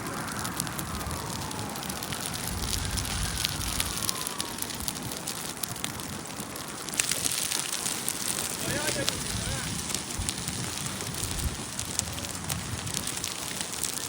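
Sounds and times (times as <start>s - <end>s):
low rumble: 0.0s - 5.0s
fire crackling and popping: 0.0s - 14.0s.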